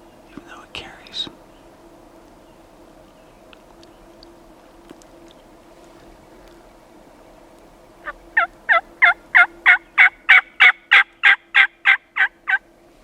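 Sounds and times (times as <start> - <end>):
turkey yelping: 8.0 - 12.6.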